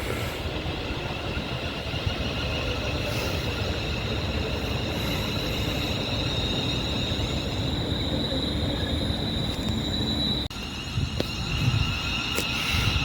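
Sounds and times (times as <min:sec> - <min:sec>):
high steady whine: 0:00.0 - 0:13.0
train rumbling: 0:00.0 - 0:13.0.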